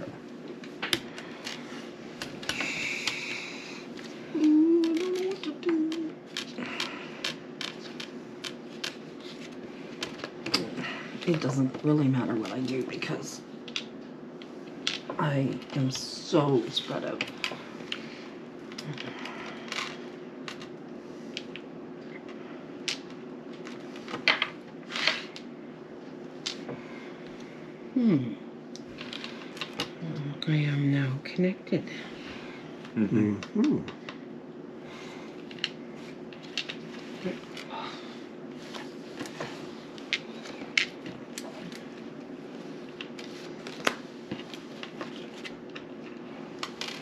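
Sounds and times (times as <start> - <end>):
low steady hum: 0.0 - 47.0
person humming: 4.3 - 7.0, 28.0 - 28.4, 33.0 - 34.0.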